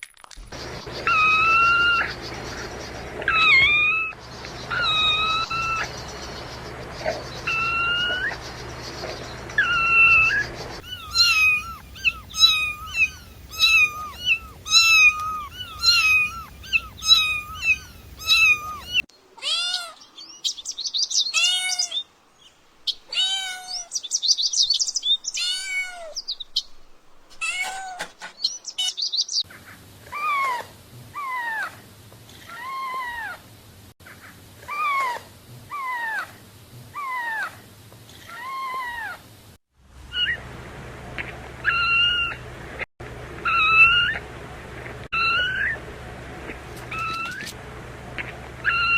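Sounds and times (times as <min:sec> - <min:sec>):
kittens meowing: 0:01.0 - 0:02.2, 0:03.2 - 0:05.9, 0:07.0 - 0:08.4, 0:09.6 - 0:20.0, 0:25.4 - 0:26.2, 0:43.4 - 0:44.2, 0:45.2 - 0:45.8, 0:46.8 - 0:47.6, 0:48.6 - 0:48.9.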